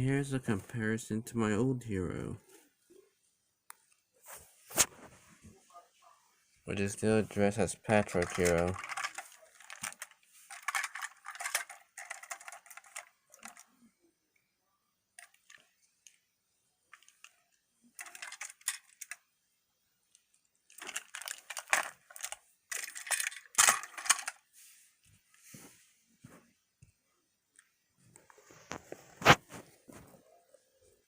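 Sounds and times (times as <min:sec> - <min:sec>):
plastic toy trains clattering: 0:06.8 - 0:13.9, 0:15.2 - 0:16.2, 0:16.9 - 0:19.3, 0:20.7 - 0:24.5.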